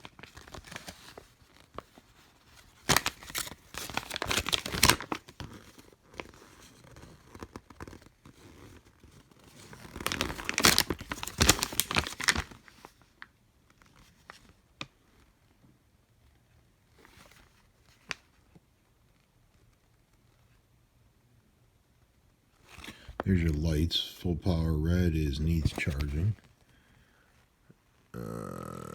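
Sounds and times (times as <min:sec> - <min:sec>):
paper rustling and crinkling: 0:00.0 - 0:14.6, 0:25.6 - 0:26.6.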